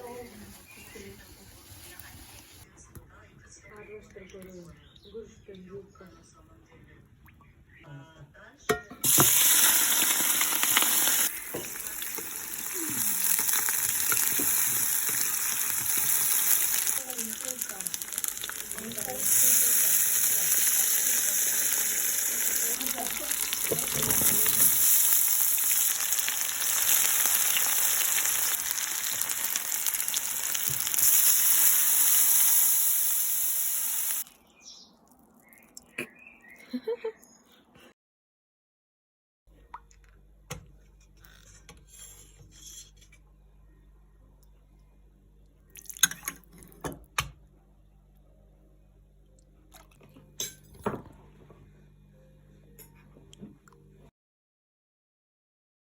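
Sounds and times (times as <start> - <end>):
food sizzling in a pan: 0.0 - 2.6, 9.0 - 34.2.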